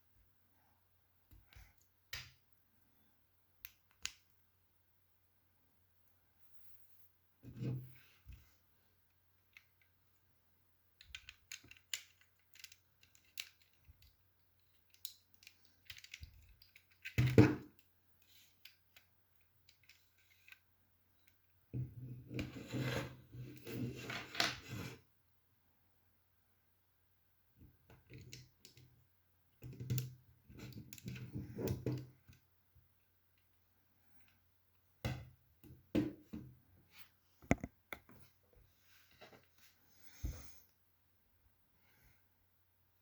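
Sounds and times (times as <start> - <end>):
plastic bricks clicking together: 11.0 - 17.9.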